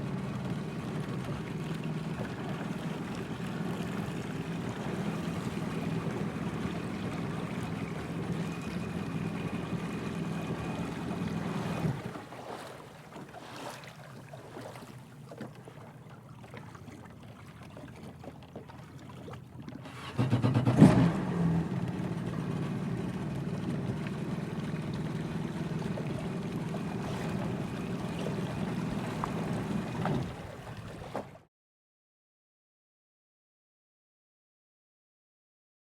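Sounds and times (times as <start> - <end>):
jet ski engine revving and idling: 0.0 - 12.6, 19.6 - 30.7.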